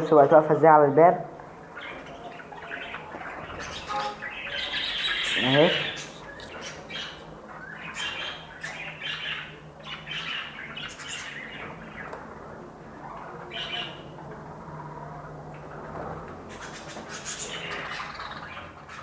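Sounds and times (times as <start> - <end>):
birds chirping and squawking: 0.1 - 19.0.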